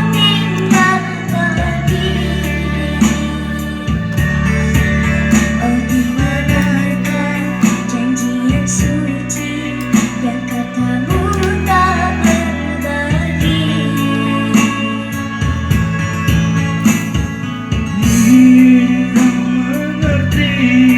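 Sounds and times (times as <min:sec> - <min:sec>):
girl singing: 0:00.0 - 0:15.8
guitar: 0:00.0 - 0:20.9
drum beat: 0:00.5 - 0:02.3, 0:03.0 - 0:09.1.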